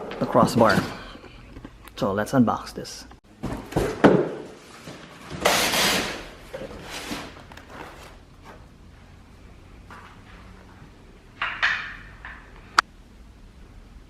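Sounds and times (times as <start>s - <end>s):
thumps and knocks of a box: 3.4s - 4.6s.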